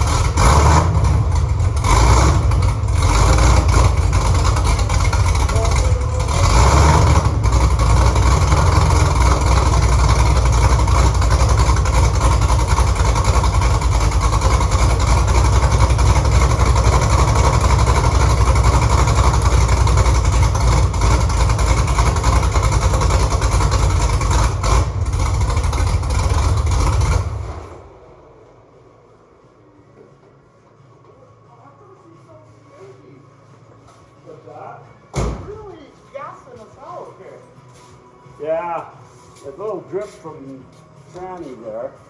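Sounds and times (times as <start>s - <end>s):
car engine idling loudly: 0.0s - 29.5s.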